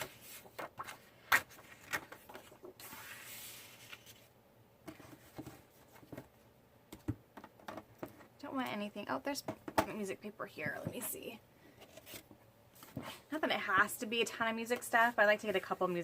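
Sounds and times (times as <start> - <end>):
paper sheets rustling: 0.0 - 4.3.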